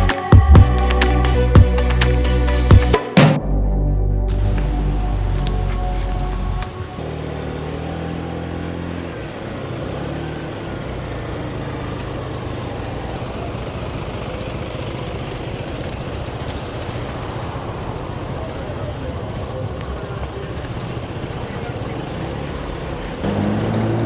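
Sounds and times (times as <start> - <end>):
music: 0.0 - 7.0
scooter engine humming: 0.0 - 24.0
wind and road noise: 4.3 - 24.0.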